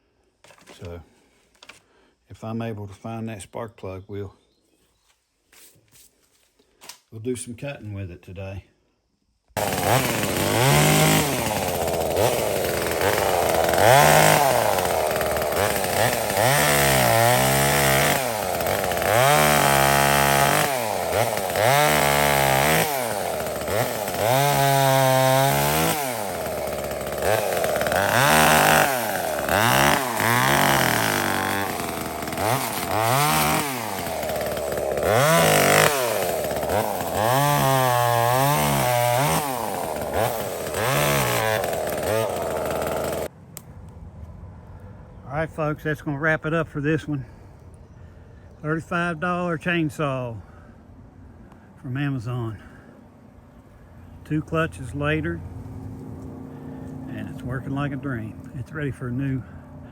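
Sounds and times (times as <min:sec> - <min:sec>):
chainsaw revving cutting wood: 0:09.6 - 0:43.3.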